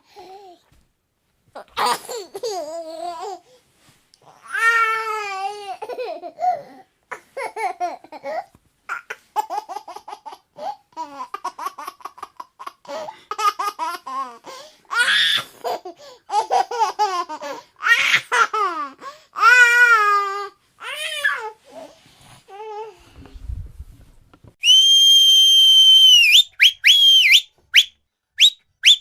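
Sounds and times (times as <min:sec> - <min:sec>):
baby laughing and babbling: 0:01.6 - 0:03.5, 0:04.3 - 0:23.0
baby high-pitched squeals: 0:19.4 - 0:21.6.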